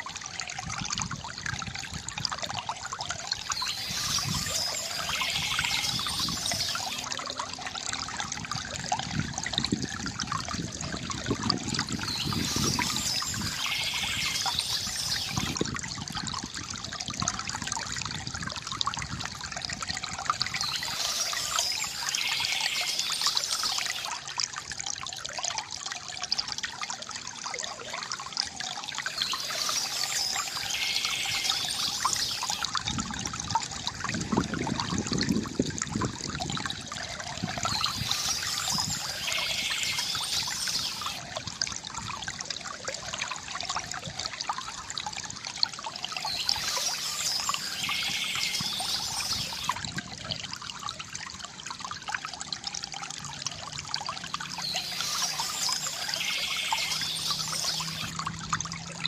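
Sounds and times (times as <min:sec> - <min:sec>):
stream trickling and gurgling: 0:00.0 - 0:59.0
birdsong: 0:03.3 - 0:07.1, 0:11.8 - 0:15.6, 0:20.4 - 0:24.2, 0:29.0 - 0:32.7, 0:37.0 - 0:41.2, 0:46.0 - 0:49.8, 0:54.4 - 0:58.2.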